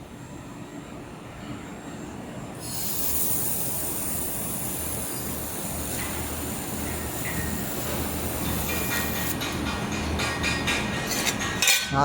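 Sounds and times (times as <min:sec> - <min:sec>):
laser welding hiss: 0:02.6 - 0:09.4.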